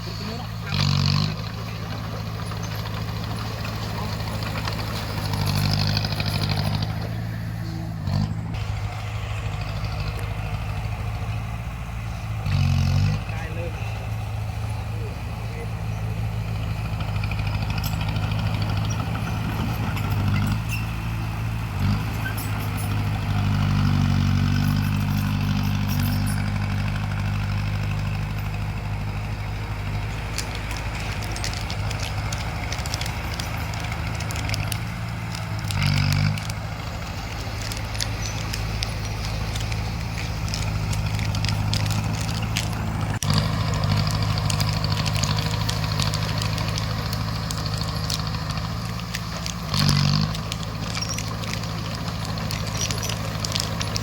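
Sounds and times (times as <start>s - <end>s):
bulldozer diesel engine: 0.0s - 54.0s
metallic clicking and clattering: 21.8s - 27.4s, 29.8s - 36.6s, 37.2s - 54.0s.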